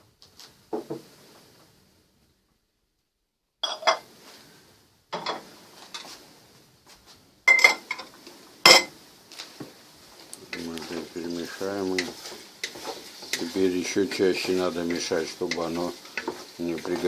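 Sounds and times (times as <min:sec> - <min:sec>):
metal utensils clinking on cookware: 0:03.6 - 0:04.0, 0:07.5 - 0:08.1.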